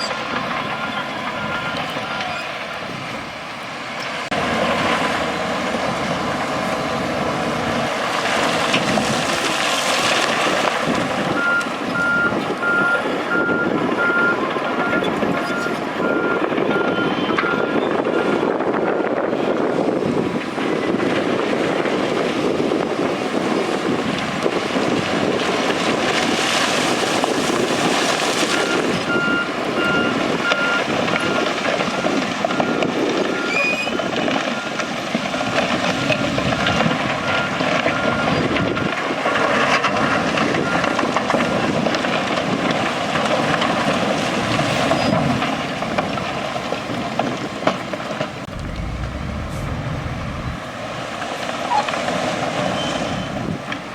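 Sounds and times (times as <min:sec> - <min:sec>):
reversing alarm beeping: 0:00.0 - 0:02.4, 0:11.4 - 0:19.2, 0:28.6 - 0:34.8
heavy diesel machinery running: 0:00.0 - 0:09.5, 0:44.4 - 0:53.9.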